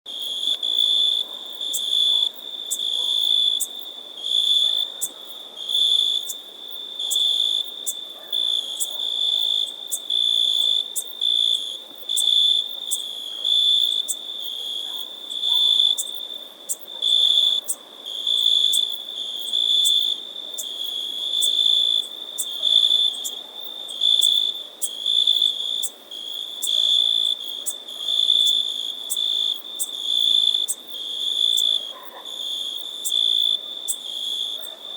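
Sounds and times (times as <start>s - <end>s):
insects trilling: 0.2s - 34.9s
sharp high insect ticks: 8.8s - 34.8s.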